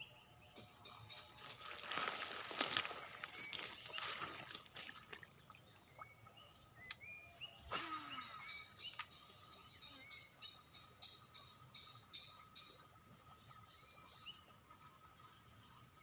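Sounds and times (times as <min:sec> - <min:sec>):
insects trilling: 0:00.0 - 0:16.0
bird chirps: 0:05.5 - 0:14.5.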